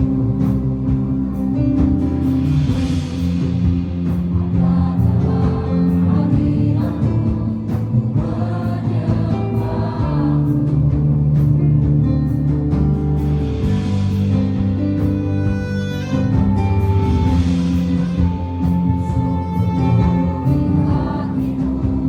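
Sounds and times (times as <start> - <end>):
group singing worship song: 0.0 - 15.1, 17.0 - 22.0
sustained instrumental accompaniment: 0.0 - 22.0.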